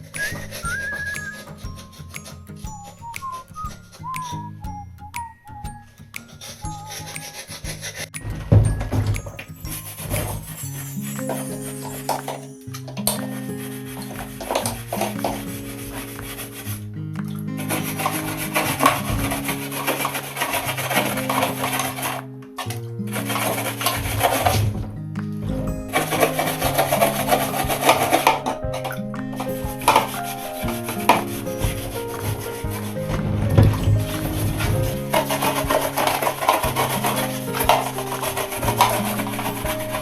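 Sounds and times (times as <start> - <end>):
rough scrubbing noise: 17.6 - 22.2, 25.4 - 28.6, 29.3 - 40.0
background music with bass: 22.5 - 40.0.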